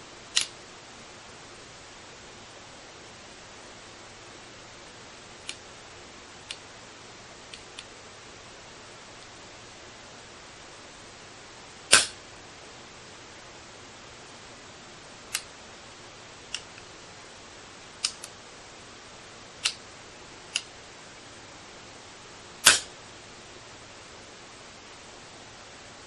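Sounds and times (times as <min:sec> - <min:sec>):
steady hiss: 0:00.0 - 0:26.0
air rifle shots cracking: 0:11.9 - 0:12.2, 0:22.6 - 0:22.9.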